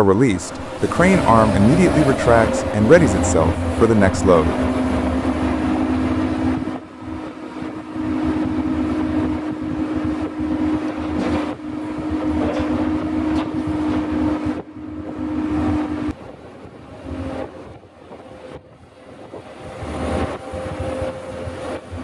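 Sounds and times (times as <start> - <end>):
diesel engine rumble: 0.0 - 16.1
constant machine whine: 0.0 - 22.0.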